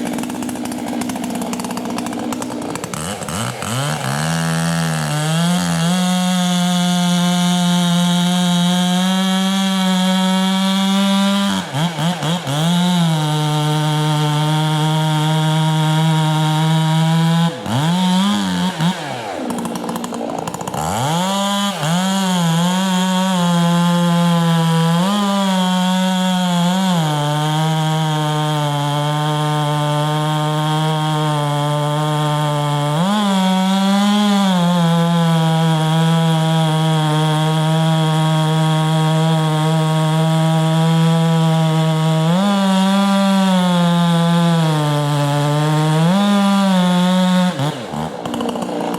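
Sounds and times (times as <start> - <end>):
chainsaw cutting wood: 0.0 - 48.9.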